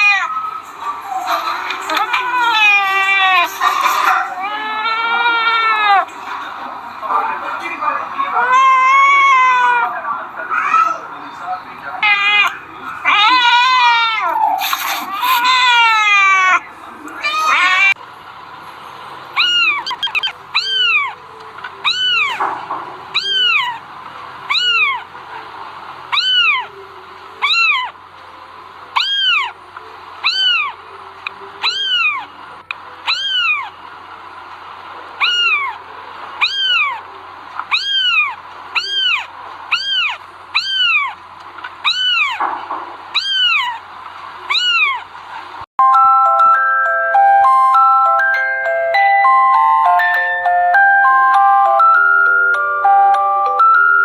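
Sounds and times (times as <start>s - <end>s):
cat meowing: 0.0s - 0.5s, 1.9s - 6.1s, 8.3s - 11.0s, 12.0s - 16.6s, 17.2s - 18.0s, 19.4s - 21.2s, 21.8s - 22.4s, 23.1s - 23.8s, 24.5s - 25.1s, 26.1s - 26.7s, 27.4s - 27.9s, 29.0s - 29.6s, 30.2s - 30.8s, 31.6s - 32.3s, 33.0s - 33.7s, 35.2s - 35.8s, 36.4s - 37.1s, 37.7s - 41.2s, 41.8s - 42.4s, 43.1s - 43.8s, 44.5s - 45.0s.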